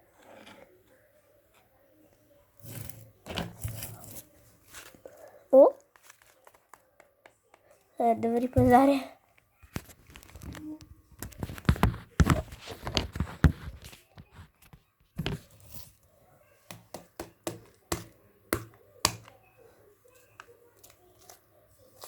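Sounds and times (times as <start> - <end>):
clicks and knocks of small objects: 5.8 - 7.7.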